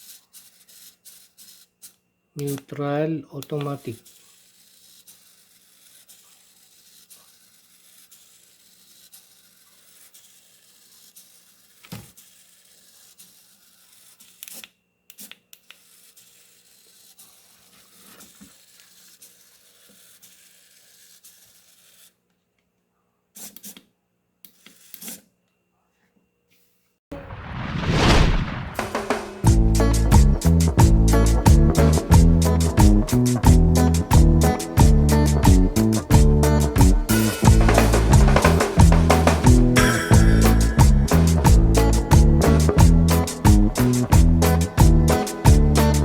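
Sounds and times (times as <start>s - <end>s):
servo motor whirring: 3.6s - 22.2s.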